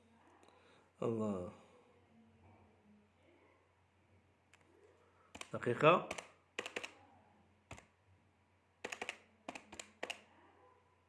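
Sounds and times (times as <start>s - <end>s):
faint low hum: 0.0s - 11.0s
keys tapping clicks: 5.4s - 6.9s, 8.8s - 10.2s.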